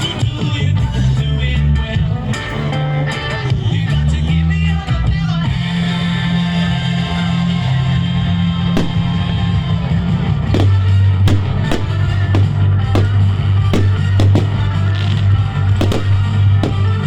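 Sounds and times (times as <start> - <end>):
music with bass line: 0.0 - 17.0
firework bangs: 8.8 - 17.0.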